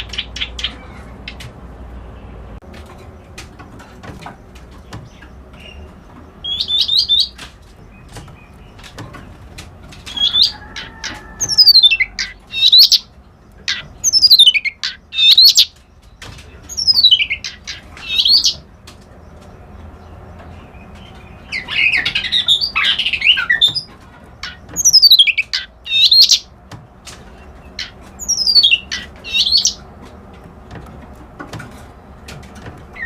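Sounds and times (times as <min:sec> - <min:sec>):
reed warbler singing: 0:03.2 - 0:31.1.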